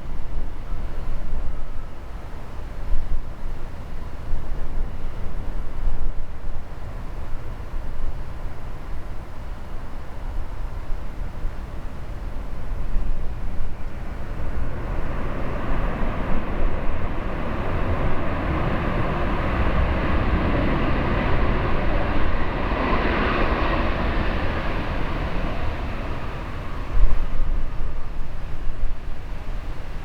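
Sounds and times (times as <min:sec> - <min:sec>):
wind rumbling on microphone: 0:00.0 - 0:30.0
jet engines roaring: 0:11.8 - 0:30.0.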